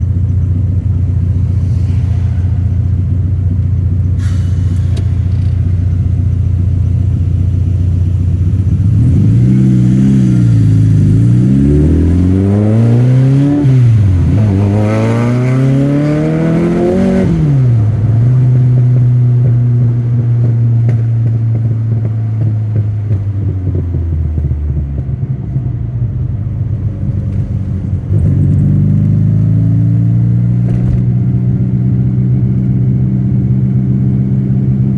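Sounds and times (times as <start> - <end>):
car engine idling and revving: 0.0 - 34.9.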